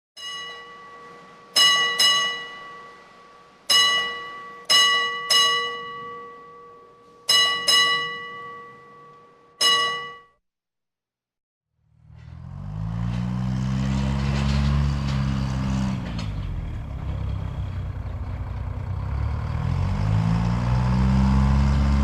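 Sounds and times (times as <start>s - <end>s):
metal struck ringing like bell: 0.2s - 10.4s.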